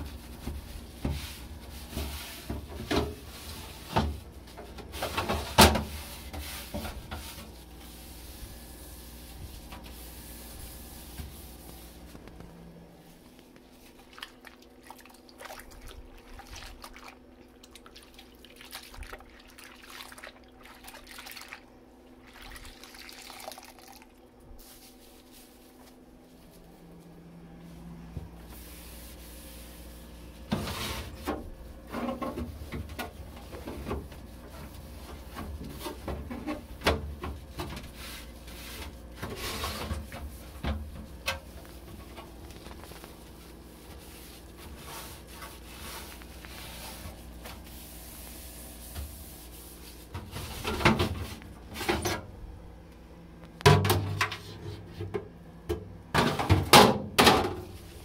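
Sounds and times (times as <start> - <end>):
rubbing and scraping in refrigerator: 0.0 - 14.2, 24.4 - 52.4, 53.5 - 55.3, 56.1 - 58.0
steady low hum: 0.0 - 23.2, 23.9 - 58.0.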